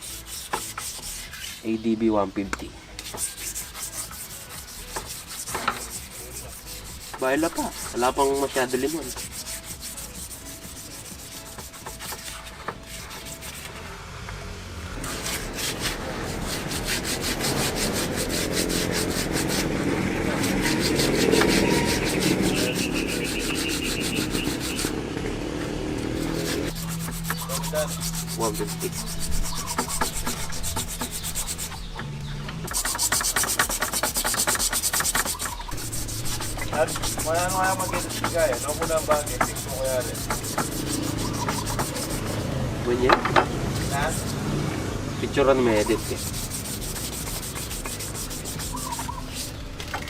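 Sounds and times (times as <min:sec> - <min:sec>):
sandpaper rubbing back and forth: 0:00.0 - 0:01.9, 0:02.9 - 0:14.0, 0:15.0 - 0:44.6, 0:45.3 - 0:50.0.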